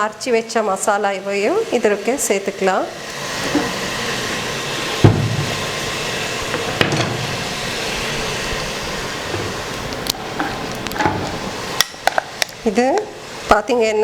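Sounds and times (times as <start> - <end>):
sizzling in a hot pan: 0.0 - 14.0
heavy knock: 5.0 - 5.6.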